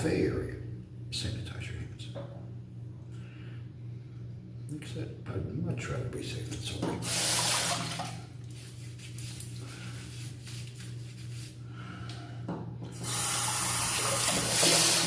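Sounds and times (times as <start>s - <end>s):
sink tap running: 7.0s - 8.2s, 12.9s - 15.0s.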